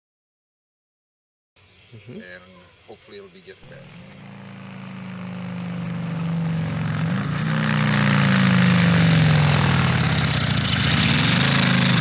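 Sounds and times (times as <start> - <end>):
car engine revving: 3.6 - 12.0.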